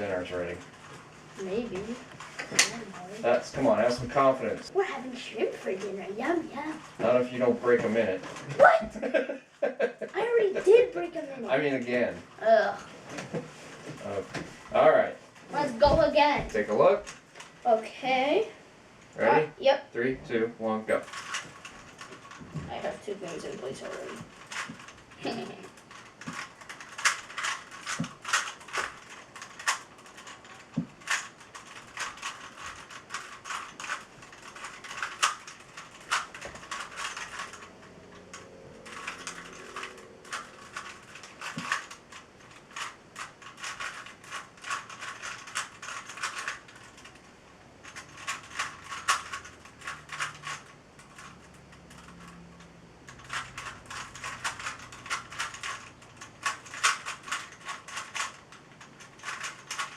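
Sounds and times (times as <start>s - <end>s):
puzzle cube plastic clicking: 25.8s - 47.2s, 47.8s - 59.9s.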